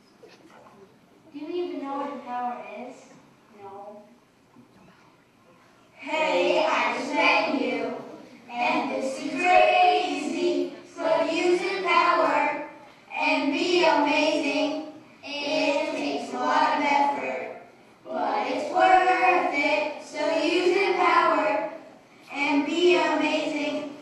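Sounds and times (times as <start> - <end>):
children singing together: 6.0 - 24.0.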